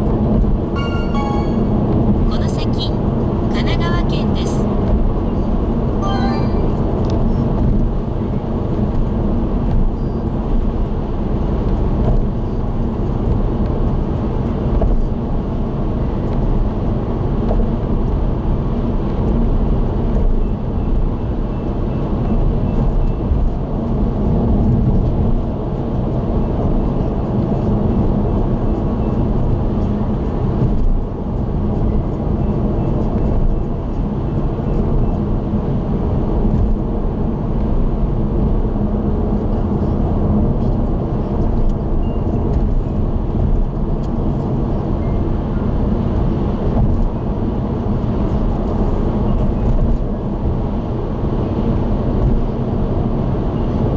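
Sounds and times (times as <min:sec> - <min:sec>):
car road noise from inside: 0:00.0 - 0:53.9.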